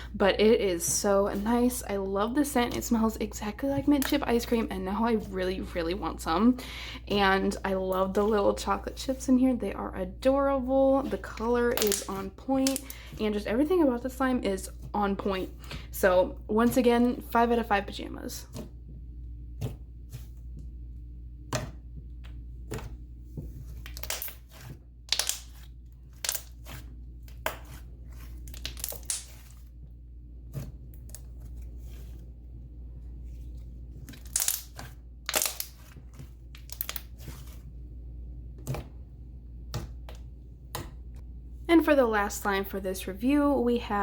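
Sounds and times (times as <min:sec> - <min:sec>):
low steady hum: 0:00.0 - 0:44.0
slime crackling and popping: 0:23.9 - 0:26.8, 0:28.3 - 0:29.5, 0:34.1 - 0:36.0.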